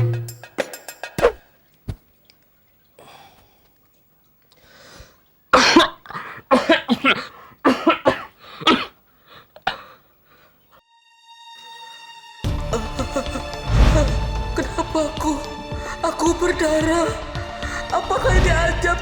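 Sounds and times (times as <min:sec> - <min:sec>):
person coughing: 0:05.6 - 0:09.0, 0:09.6 - 0:10.0, 0:12.7 - 0:14.8.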